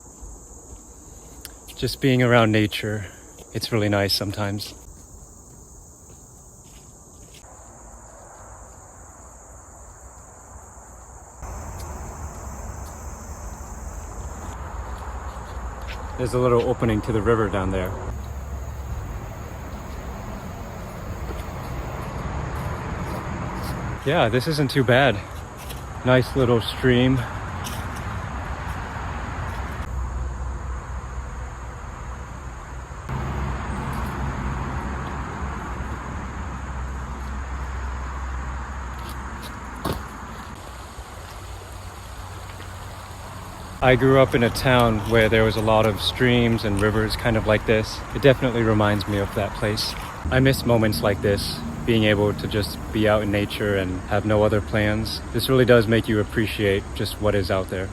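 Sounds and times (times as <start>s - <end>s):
crickets chirping: 0.0s - 57.9s
outdoor rushing noise: 11.4s - 57.9s
low rushing noise: 42.0s - 57.2s.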